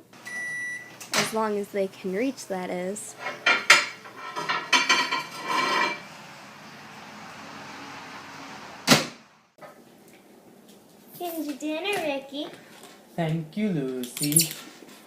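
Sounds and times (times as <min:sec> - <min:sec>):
steady low hum: 0:00.6 - 0:04.3
dishes and utensils clattering: 0:03.2 - 0:06.1.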